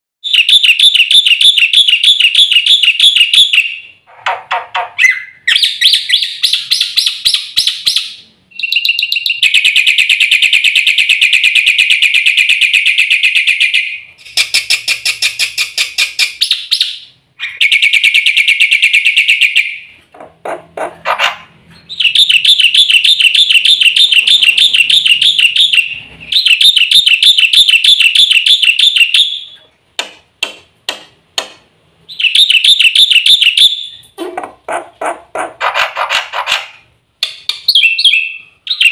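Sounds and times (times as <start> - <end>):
starling singing: 11.8 - 29.6, 32.1 - 38.9.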